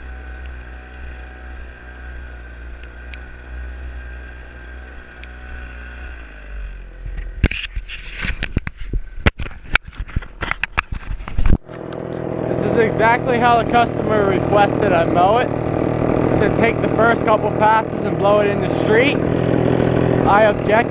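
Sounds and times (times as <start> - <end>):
lawn mower engine running: 0.0 - 7.7, 9.7 - 20.9
sharp clicks and knocks: 7.1 - 12.3.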